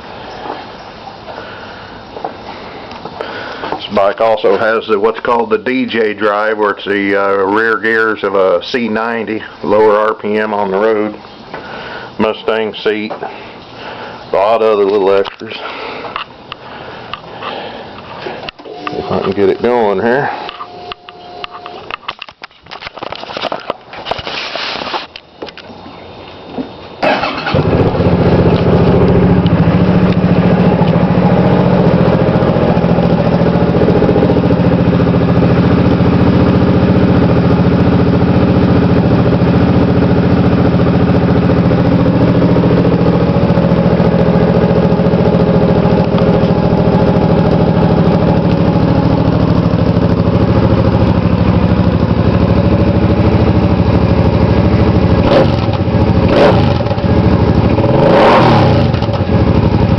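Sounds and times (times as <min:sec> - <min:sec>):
motorcycle engine idling: 0:27.1 - 0:59.9.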